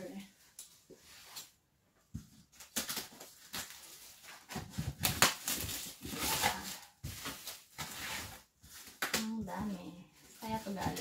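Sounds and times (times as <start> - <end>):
packaging crinkling: 2.4 - 11.0.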